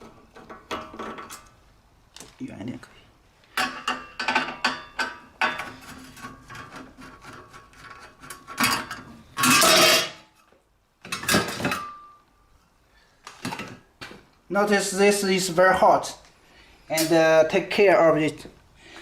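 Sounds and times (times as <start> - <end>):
metal clatter: 3.6 - 10.3.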